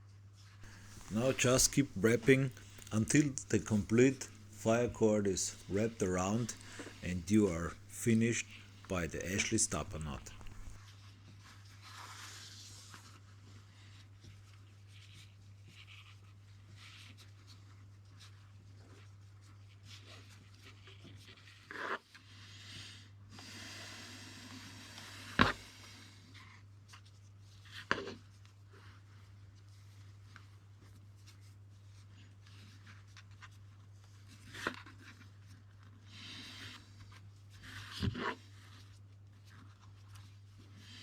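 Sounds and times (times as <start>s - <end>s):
cord rustling and sliding: 0.6s - 4.6s.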